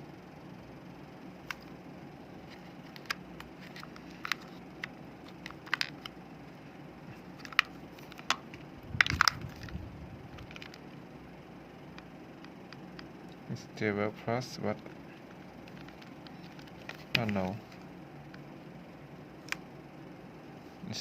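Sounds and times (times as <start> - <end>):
handling rattle: 7.1 - 10.9, 15.1 - 17.9.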